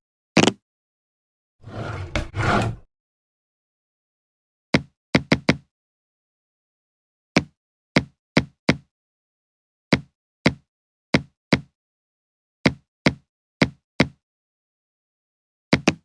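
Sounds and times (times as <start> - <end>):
scraping rustle: 1.6 - 2.9.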